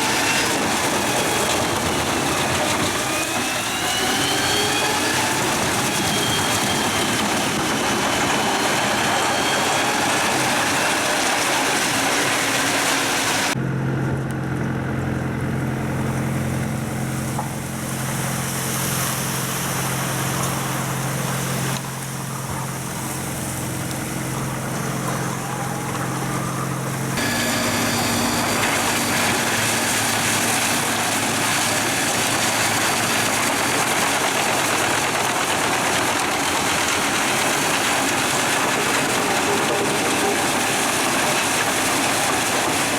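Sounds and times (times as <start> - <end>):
wood chipper running: 0.0 - 42.9
truck engine hum: 13.4 - 42.5.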